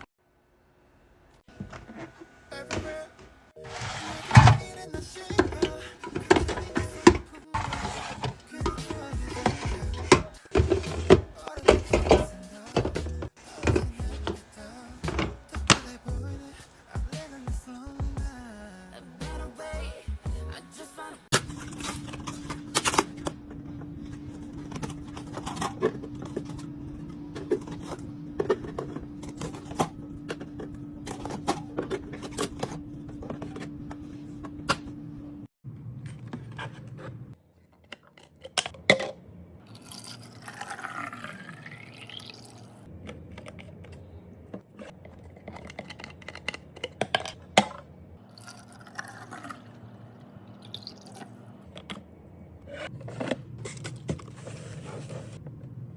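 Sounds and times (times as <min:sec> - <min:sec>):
liquid pouring into containers: 0:39.7 - 0:42.9, 0:48.2 - 0:51.6.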